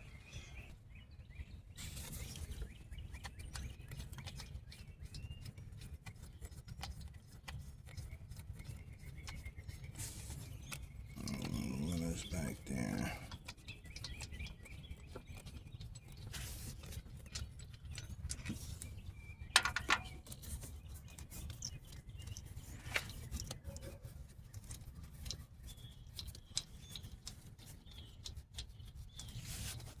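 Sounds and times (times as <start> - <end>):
hand tools clicking on metal: 19.6 - 20.2.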